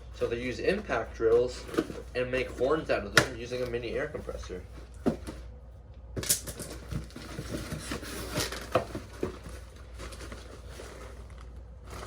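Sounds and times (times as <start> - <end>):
packaging rustling: 6.6 - 12.0.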